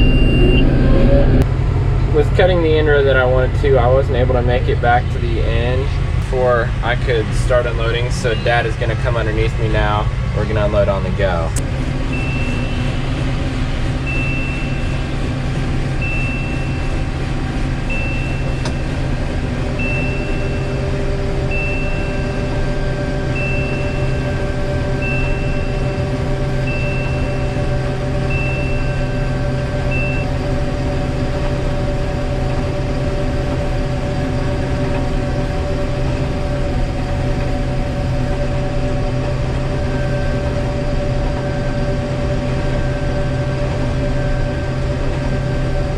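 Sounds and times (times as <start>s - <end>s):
short high electronic beep: 0.0s - 1.4s, 21.5s - 30.3s
combine harvester running: 0.0s - 45.9s.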